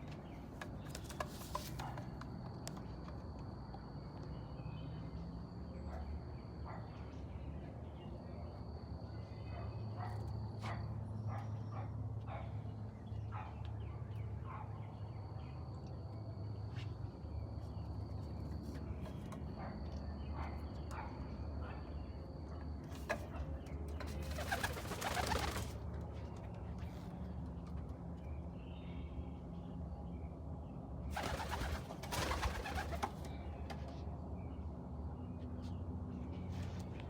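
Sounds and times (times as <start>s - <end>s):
bird calls and clicks: 0.0s - 4.4s, 22.8s - 28.5s, 31.2s - 34.2s.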